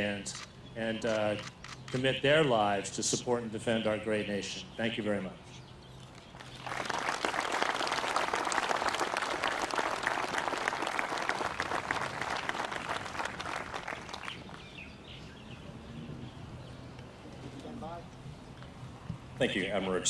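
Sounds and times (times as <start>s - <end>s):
audience applauding: 6.4s - 14.7s.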